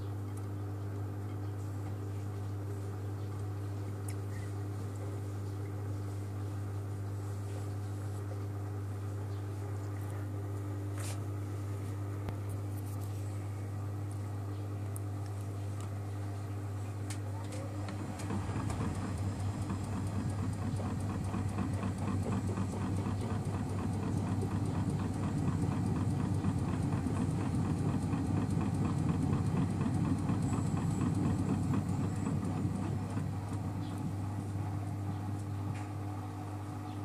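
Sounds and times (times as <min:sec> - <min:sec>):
washing machine spinning: 0:15.9 - 0:37.0.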